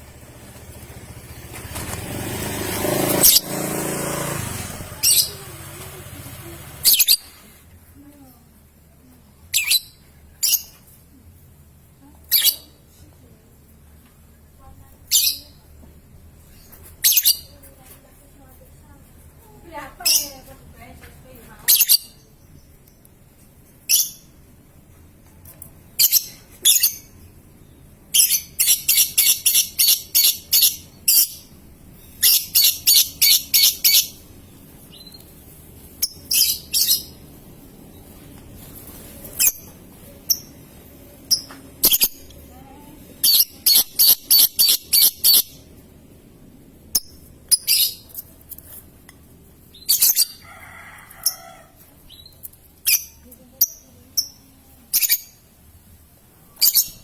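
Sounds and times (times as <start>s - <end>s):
lovebird chattering trill: 5.0s - 5.5s, 6.8s - 7.3s, 9.5s - 10.8s, 20.0s - 20.5s, 28.2s - 31.5s, 32.2s - 34.2s, 36.0s - 37.2s, 43.2s - 45.7s, 46.9s - 48.2s, 52.1s - 55.4s, 56.6s - 57.0s.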